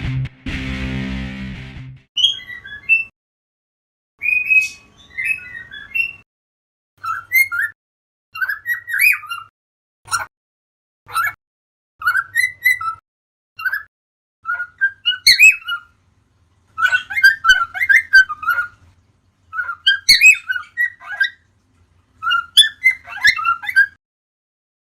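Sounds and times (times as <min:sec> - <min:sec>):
cockatiels whistling and chattering: 0:02.2 - 0:03.1, 0:04.2 - 0:06.2, 0:07.0 - 0:07.8, 0:08.4 - 0:09.5, 0:11.1 - 0:11.4, 0:12.0 - 0:13.0, 0:13.6 - 0:13.9, 0:14.5 - 0:15.9, 0:16.8 - 0:18.8, 0:19.5 - 0:21.4, 0:22.2 - 0:24.0.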